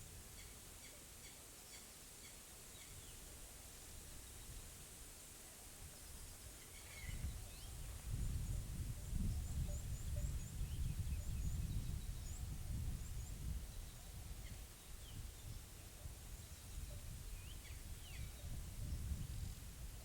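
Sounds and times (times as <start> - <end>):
wind on microphone: 6.8 - 20.0
small birds chirping: 9.1 - 18.6.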